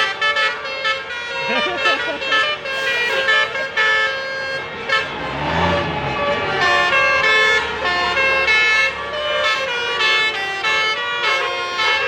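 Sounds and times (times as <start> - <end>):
bus horn playing a tune: 0.0 - 12.0
deep engine rumble: 2.7 - 10.6.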